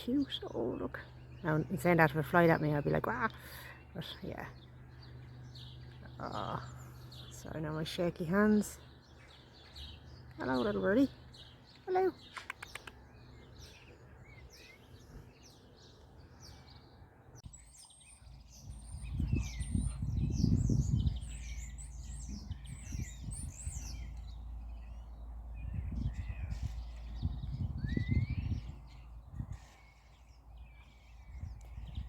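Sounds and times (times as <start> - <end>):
birds chirping and singing: 0.0 - 32.0
low rumble on microphone: 17.4 - 32.0.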